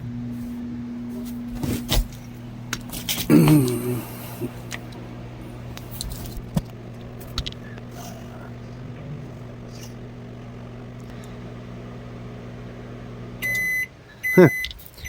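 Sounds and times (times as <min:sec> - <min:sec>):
microwave oven humming: 0:00.0 - 0:15.0
microwave beeper: 0:13.4 - 0:14.7.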